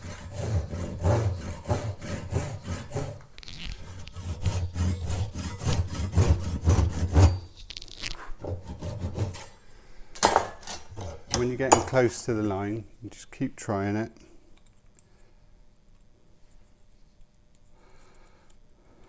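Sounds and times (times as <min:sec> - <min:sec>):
hand saw cutting wood: 0:00.0 - 0:07.6, 0:08.2 - 0:09.6, 0:10.6 - 0:12.0.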